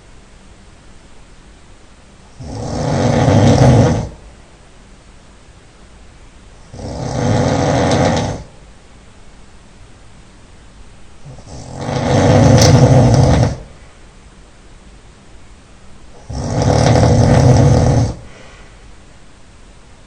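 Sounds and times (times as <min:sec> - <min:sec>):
man snoring loudly: 0:02.4 - 0:04.2, 0:06.7 - 0:08.6, 0:11.2 - 0:13.7, 0:16.2 - 0:18.4
quiet breathing: 0:16.7 - 0:19.0.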